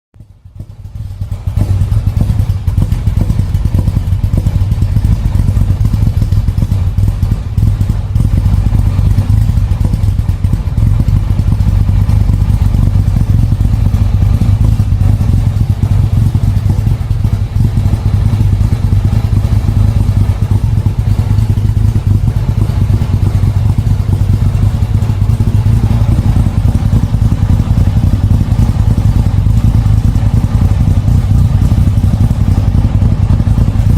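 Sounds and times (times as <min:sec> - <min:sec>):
engine idling with clatter: 0:00.2 - 0:33.9.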